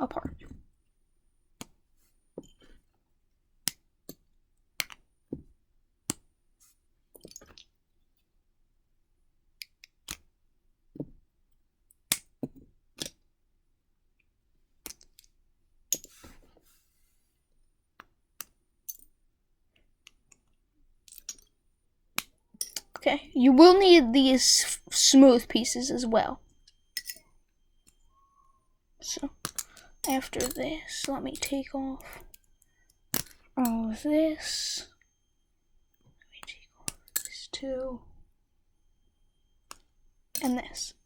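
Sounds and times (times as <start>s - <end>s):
plastic bricks clicking: 29.3s - 32.4s.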